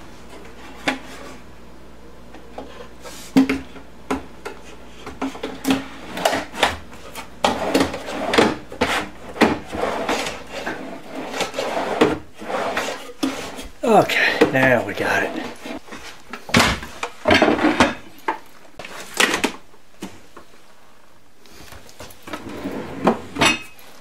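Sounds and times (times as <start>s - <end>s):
wooden shelf scraping: 0.2s - 1.5s, 4.6s - 18.2s, 21.6s - 24.0s.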